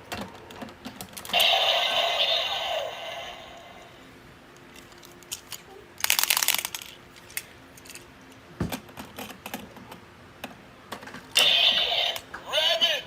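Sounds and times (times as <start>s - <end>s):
plastic toy belt clicking: 5.3s - 8.0s.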